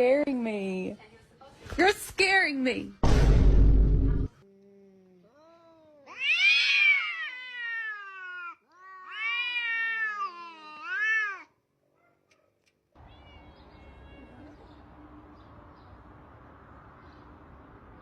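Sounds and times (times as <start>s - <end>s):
cat meowing: 5.3s - 11.6s, 13.0s - 14.8s.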